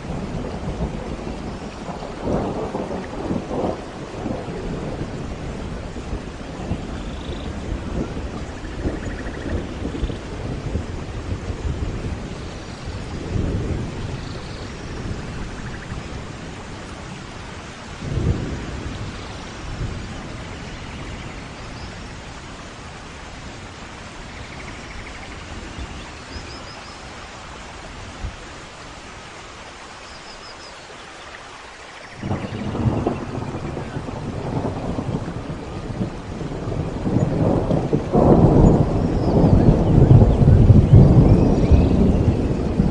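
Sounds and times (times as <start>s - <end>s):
rolling thunder: 0.0s - 28.4s, 32.1s - 42.9s
steady rain: 0.0s - 42.9s.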